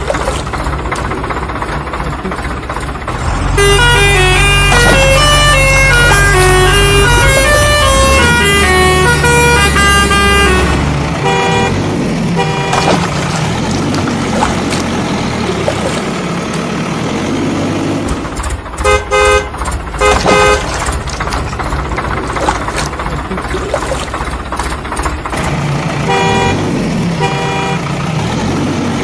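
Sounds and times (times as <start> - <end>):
rumbling engine: 0.0 - 29.0
vehicle horn honks: 3.5 - 13.2, 18.8 - 20.8, 26.0 - 27.9.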